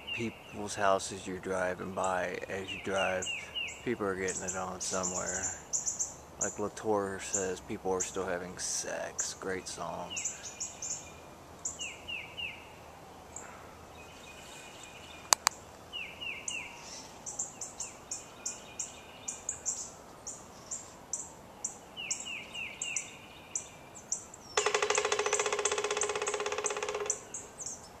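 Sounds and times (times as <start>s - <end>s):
birds chirping: 0.0s - 28.0s
sharp click: 15.3s - 15.6s.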